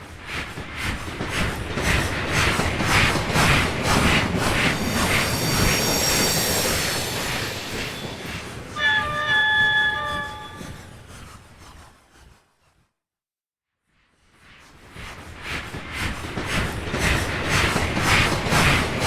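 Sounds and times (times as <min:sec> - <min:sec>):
steam locomotive chuffing: 0:00.2 - 0:11.8, 0:15.6 - 0:19.0
steam whistle chord: 0:04.6 - 0:11.1.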